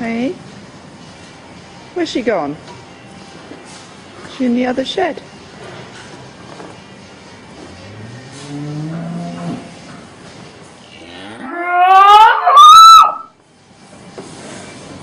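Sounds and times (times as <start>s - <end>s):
cow mooing: 7.8s - 9.9s, 10.9s - 13.3s.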